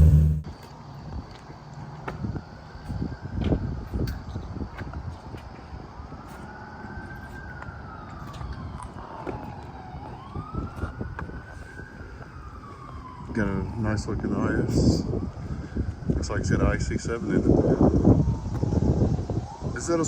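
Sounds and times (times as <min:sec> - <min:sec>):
low background rumble: 0:00.0 - 0:00.4
emergency vehicle siren wailing: 0:05.5 - 0:16.2, 0:16.9 - 0:20.0.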